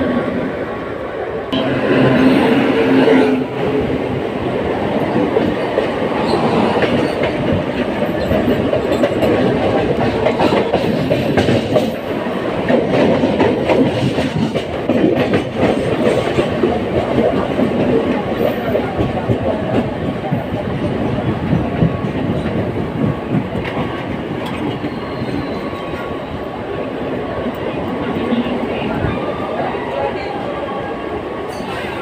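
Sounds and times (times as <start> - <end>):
train wheels rumbling on track: 0.0 - 32.0
clickety-clack over rail joints: 4.9 - 26.4.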